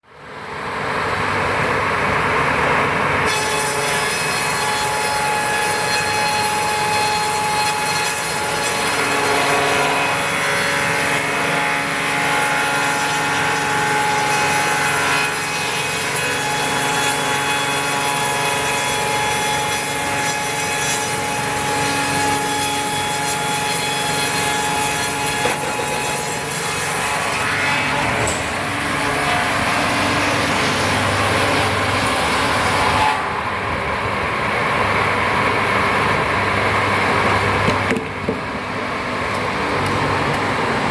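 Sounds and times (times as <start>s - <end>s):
circular saw cutting wood: 3.2s - 37.6s.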